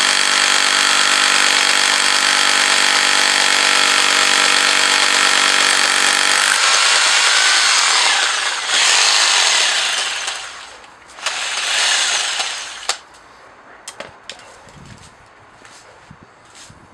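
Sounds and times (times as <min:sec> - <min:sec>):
rotary hammer running: 0:00.0 - 0:13.0
sharp click: 0:12.4 - 0:13.0.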